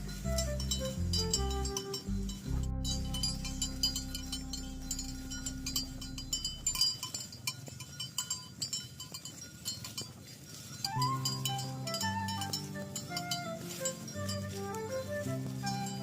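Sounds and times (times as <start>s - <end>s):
low steady tone: 0.0s - 8.7s
cattle bells clinking: 0.0s - 16.0s.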